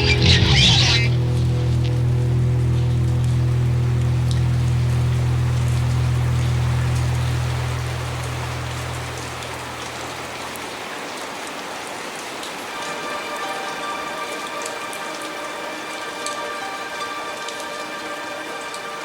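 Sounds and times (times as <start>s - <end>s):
low held note: 0.0s - 10.8s
sustained chord of steady tones: 0.0s - 10.8s, 12.6s - 19.0s
steady rain falling: 0.0s - 19.0s.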